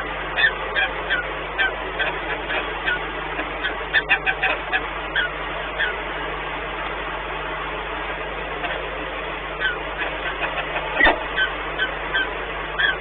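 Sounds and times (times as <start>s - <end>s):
falcons calling: 0.0s - 6.1s, 9.5s - 13.0s
low hum: 0.0s - 13.0s.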